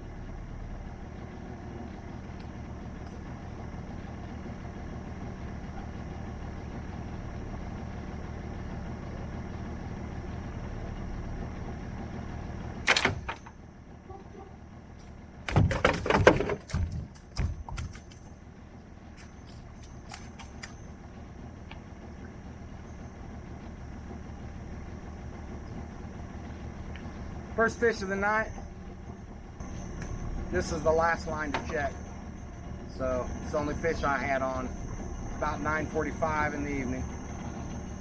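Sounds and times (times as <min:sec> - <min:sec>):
boat motor idling: 0:00.0 - 0:38.0
loud clattering thumps: 0:15.5 - 0:18.2.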